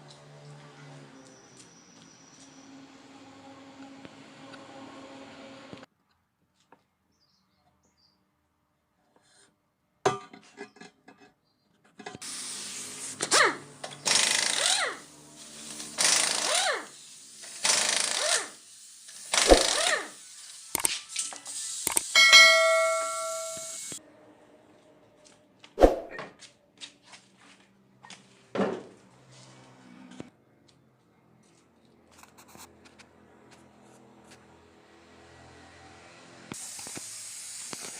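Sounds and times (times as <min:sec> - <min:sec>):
power tool whining: 0:13.2 - 0:24.0.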